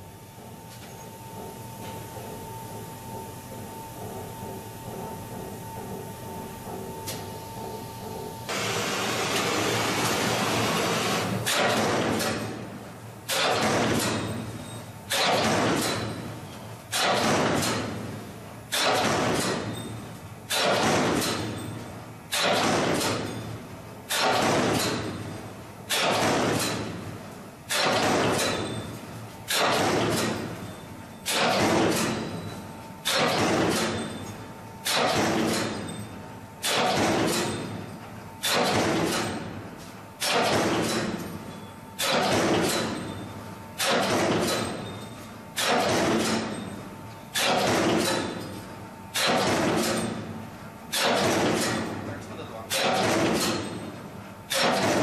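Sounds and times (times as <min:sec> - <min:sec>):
punch press metallic hits: 0:08.5 - 0:12.6, 0:13.3 - 0:14.4, 0:15.1 - 0:16.3, 0:16.9 - 0:18.0, 0:20.5 - 0:21.6, 0:22.3 - 0:23.4, 0:24.1 - 0:25.2, 0:25.9 - 0:27.0, 0:27.7 - 0:30.6, 0:31.3 - 0:36.0, 0:36.6 - 0:37.8, 0:40.2 - 0:41.4, 0:42.0 - 0:45.0, 0:45.6 - 0:48.5, 0:49.2 - 0:50.2, 0:50.9 - 0:52.0, 0:52.7 - 0:55.0.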